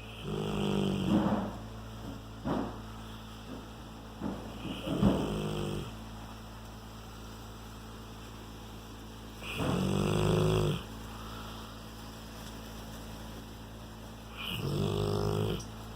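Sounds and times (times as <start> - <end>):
dog snoring: 0.0 - 1.6, 4.5 - 6.0, 9.4 - 11.0, 14.3 - 15.8.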